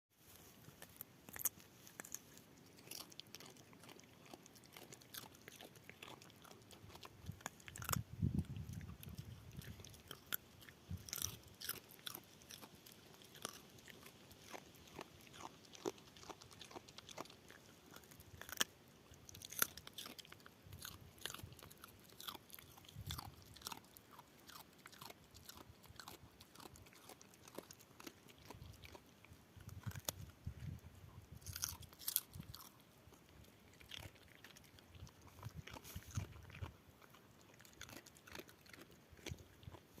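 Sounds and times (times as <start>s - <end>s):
dog chewing with crunching clicks: 0.4s - 40.0s.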